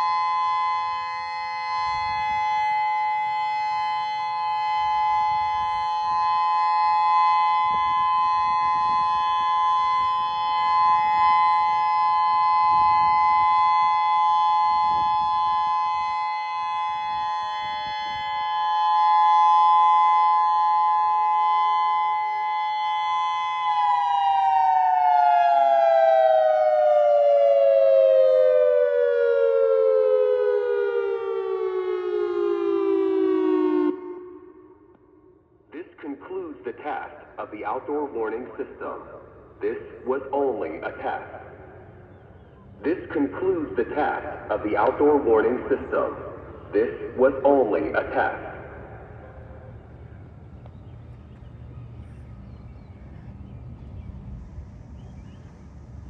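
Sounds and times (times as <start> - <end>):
electronic warning siren chord: 0.0 - 35.7.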